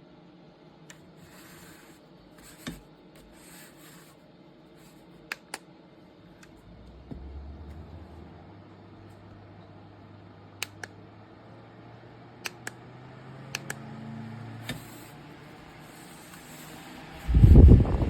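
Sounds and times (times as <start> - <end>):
faint hum: 0.0 - 18.0
fan airflow buffeting microphone: 6.0 - 18.0.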